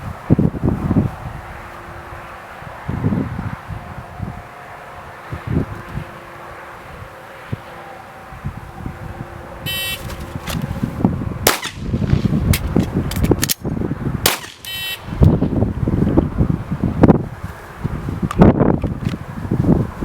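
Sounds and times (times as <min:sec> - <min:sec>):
wind rumble on microphone: 0:00.0 - 0:20.0
pistol shots: 0:11.5 - 0:12.2, 0:14.2 - 0:14.8.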